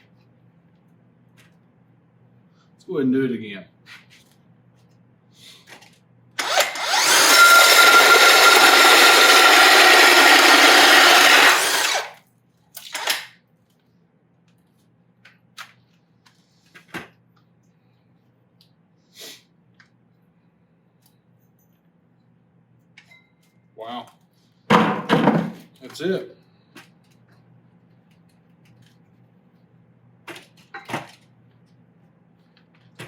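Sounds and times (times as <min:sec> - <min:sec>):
power drill hole saw cutting: 0:06.4 - 0:12.2.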